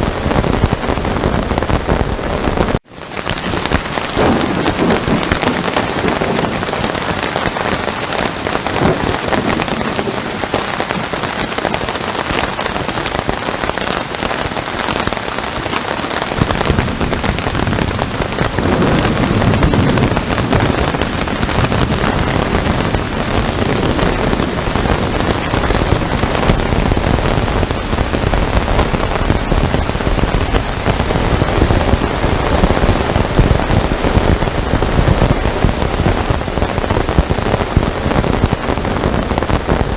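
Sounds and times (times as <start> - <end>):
heavy rain falling: 0.0 - 39.9.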